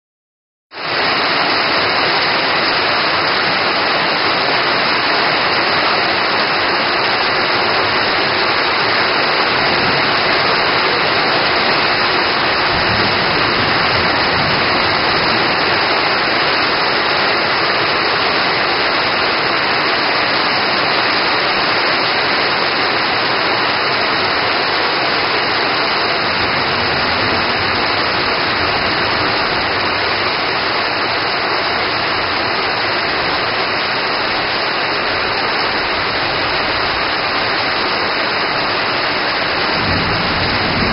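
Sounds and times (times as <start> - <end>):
heavy rain pouring: 0.7 - 40.9.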